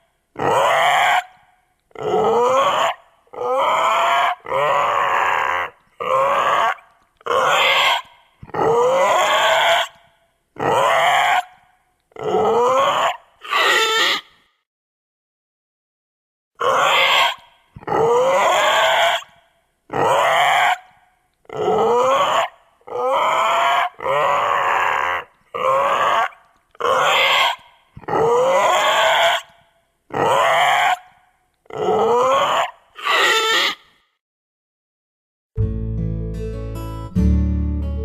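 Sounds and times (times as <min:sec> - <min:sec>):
baby dinosaur calls: 0:00.4 - 0:10.0, 0:12.2 - 0:14.4, 0:16.6 - 0:19.4, 0:20.0 - 0:33.9.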